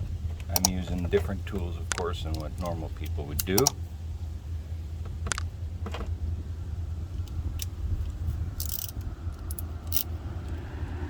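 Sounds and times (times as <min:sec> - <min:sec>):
low background rumble: 0:00.0 - 0:11.0
sharp metallic clicks: 0:00.4 - 0:03.8, 0:05.2 - 0:05.5, 0:07.2 - 0:10.6.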